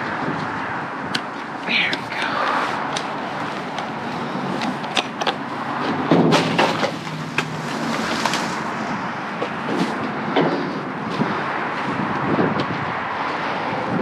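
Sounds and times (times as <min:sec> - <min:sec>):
steady background noise: 0:00.0 - 0:14.0
objects clattering while rummaging: 0:02.9 - 0:08.8.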